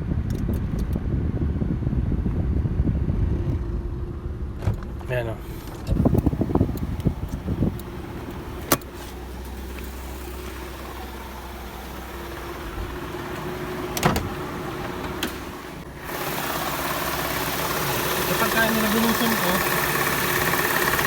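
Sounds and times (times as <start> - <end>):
car engine idling: 0.5 - 21.0
compressor knocking: 4.6 - 10.7, 11.3 - 21.0.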